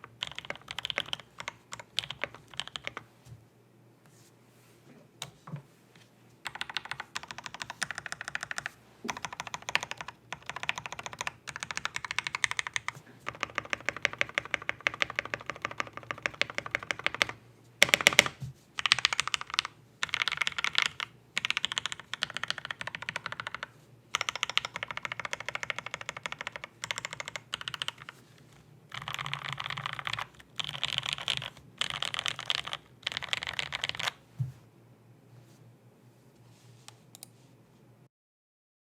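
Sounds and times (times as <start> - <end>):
typing on mechanical keyboard: 0.0 - 3.0, 6.4 - 28.2, 28.9 - 34.2.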